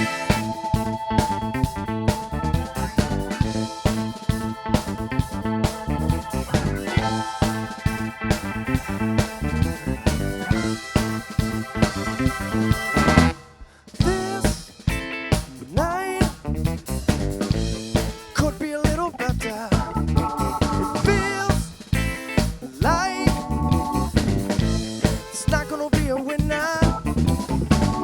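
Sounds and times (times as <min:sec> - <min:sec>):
bending lead melody: 0:00.0 - 0:13.6, 0:19.2 - 0:22.4, 0:23.0 - 0:25.7
drum kit steady beat: 0:00.0 - 0:28.0.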